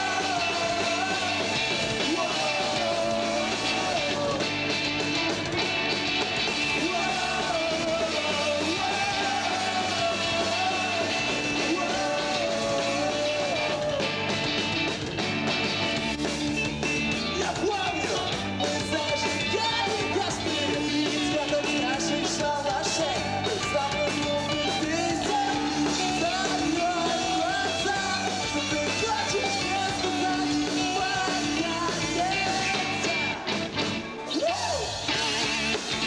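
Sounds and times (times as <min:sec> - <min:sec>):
person singing: 0:00.0 - 0:04.5, 0:06.7 - 0:14.2, 0:17.4 - 0:33.5
live rock band playing: 0:00.0 - 0:36.0.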